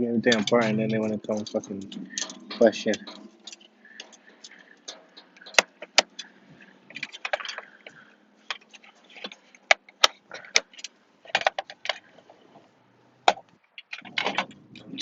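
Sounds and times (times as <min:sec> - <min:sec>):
plastic and metal parts clicking: 0:00.2 - 0:12.3, 0:13.3 - 0:14.6.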